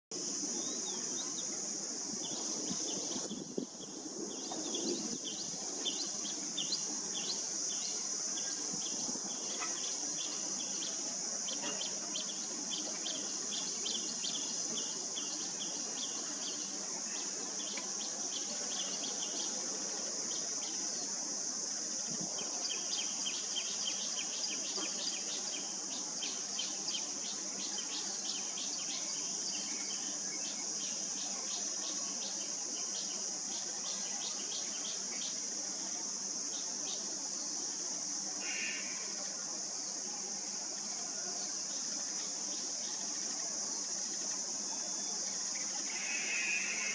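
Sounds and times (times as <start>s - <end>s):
high-pitched insect drone: 29.8s - 46.9s.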